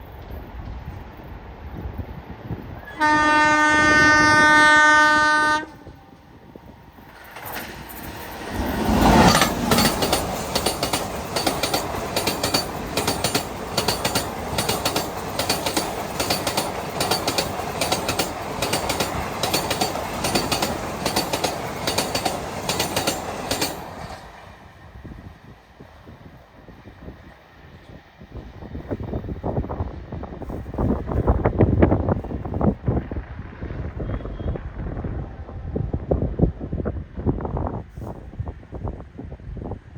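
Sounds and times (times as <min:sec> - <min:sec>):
train passing at speed: 0:00.0 - 0:39.9
train wheels clattering over rail joints: 0:07.0 - 0:24.3.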